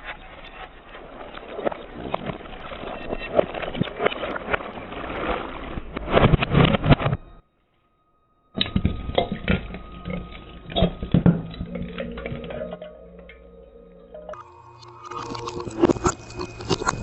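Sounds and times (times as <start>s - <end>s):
brittle material crunching: 14.4s - 17.0s.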